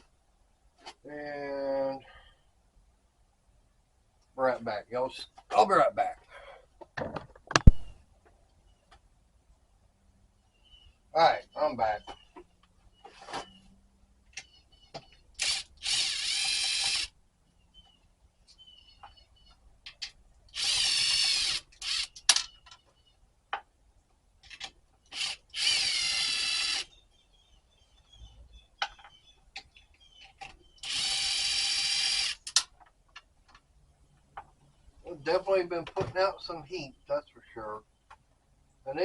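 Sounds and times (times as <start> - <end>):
cordless drill motor whine: 15.4 - 17.1, 25.1 - 26.9, 30.8 - 32.4.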